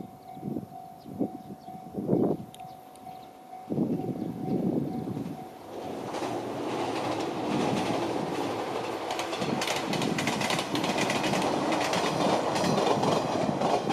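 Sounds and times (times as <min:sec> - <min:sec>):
train rumbling past: 0:03.0 - 0:13.9
wheels clicking over rail joints: 0:04.9 - 0:13.9.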